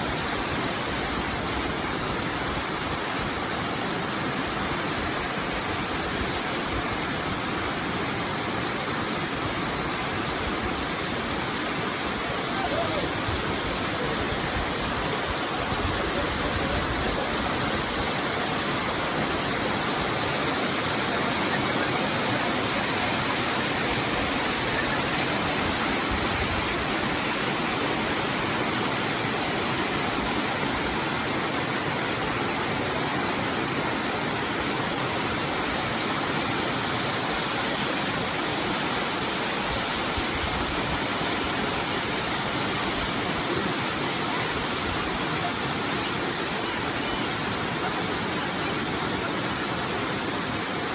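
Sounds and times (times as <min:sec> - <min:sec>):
waterfall rushing: 0:00.0 - 0:50.9.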